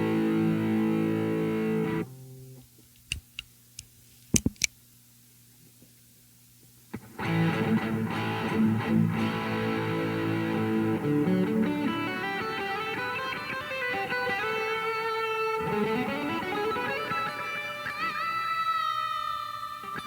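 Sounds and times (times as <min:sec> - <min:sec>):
sharp clicks: 0:03.0 - 0:04.8
distorted electric guitar: 0:07.0 - 0:18.6.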